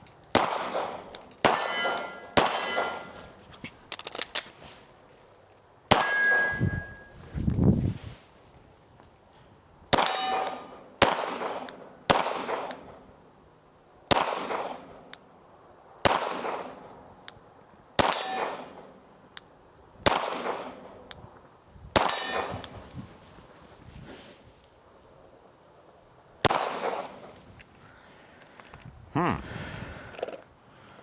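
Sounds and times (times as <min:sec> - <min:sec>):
pistol shots: 0:00.3 - 0:03.2, 0:09.9 - 0:12.9, 0:14.1 - 0:14.9, 0:16.0 - 0:16.8, 0:18.0 - 0:18.8, 0:20.1 - 0:20.9, 0:22.0 - 0:22.8, 0:26.4 - 0:27.2
metallic ringing of steel targets: 0:01.4 - 0:03.3, 0:05.9 - 0:07.2, 0:10.0 - 0:10.9, 0:18.0 - 0:18.8, 0:22.0 - 0:22.7.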